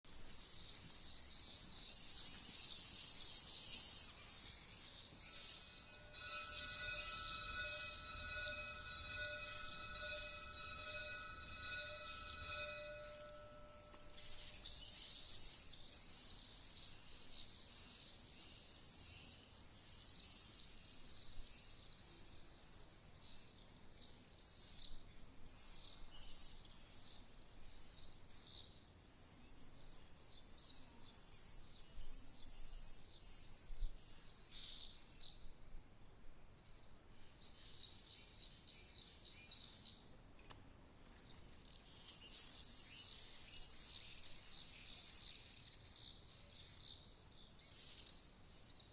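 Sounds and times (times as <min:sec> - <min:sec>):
swallows twittering: 0:00.3 - 0:14.5.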